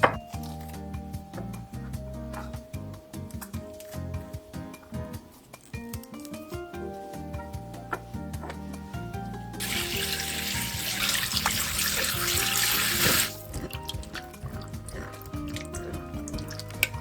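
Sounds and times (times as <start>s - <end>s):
water running from a tap: 9.6s - 17.0s.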